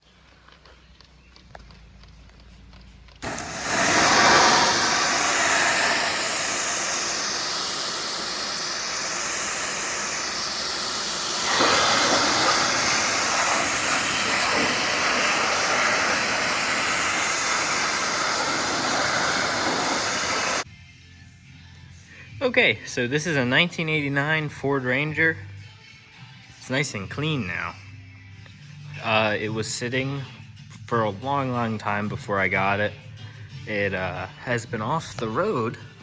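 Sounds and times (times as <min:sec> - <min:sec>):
loud swirling hiss: 0:00.0 - 0:20.6.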